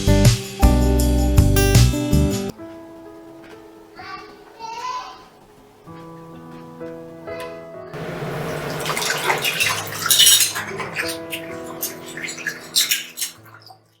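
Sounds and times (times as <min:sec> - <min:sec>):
soft background music: 0:00.0 - 0:08.0, 0:09.5 - 0:14.0
dishes and cutlery clattering: 0:08.8 - 0:13.8.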